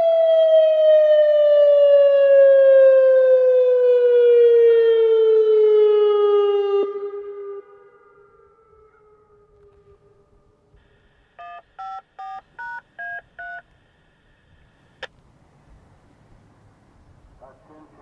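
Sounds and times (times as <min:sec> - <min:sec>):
tornado siren falling tone: 0:00.0 - 0:10.7.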